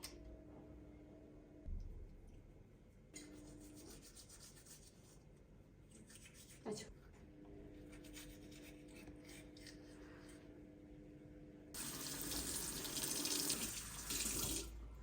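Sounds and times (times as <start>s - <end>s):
tap water running into sink: 11.8s - 14.7s.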